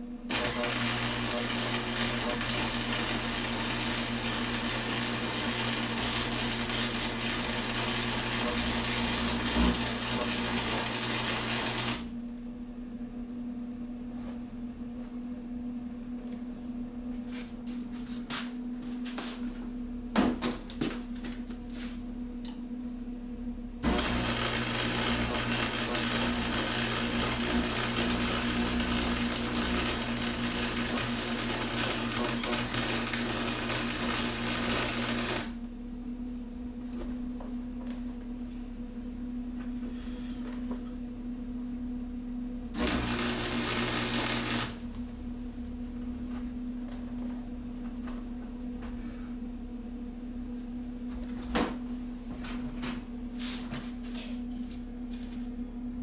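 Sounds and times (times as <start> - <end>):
electric arc welding buzz: 0.3 - 12.2, 23.8 - 35.6, 42.7 - 45.1.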